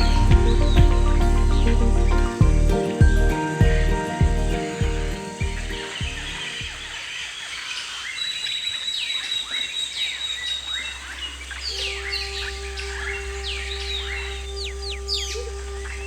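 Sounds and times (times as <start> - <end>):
thin high steady note: 0.0 - 6.9
wild birds chirping: 0.0 - 16.0.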